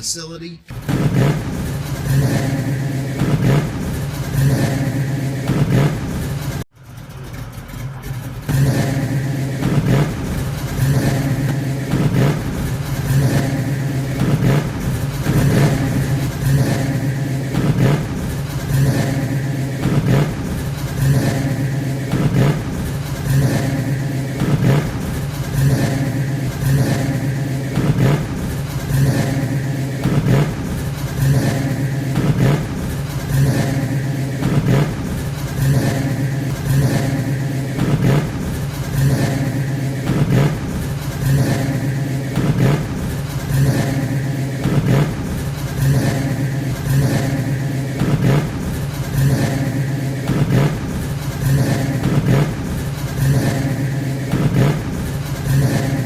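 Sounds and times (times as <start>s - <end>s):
engine running: 0.7s - 56.0s.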